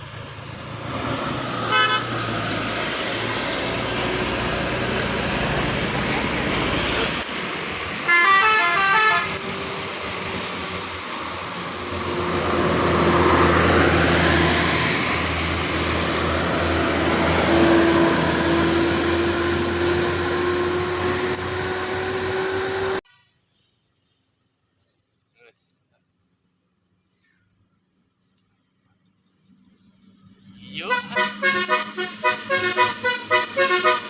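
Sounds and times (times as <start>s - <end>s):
diesel bus engine passing: 0.0s - 23.0s, 29.4s - 34.0s
multi-tone bus horn melody: 1.5s - 2.6s, 7.9s - 9.9s, 30.7s - 34.0s.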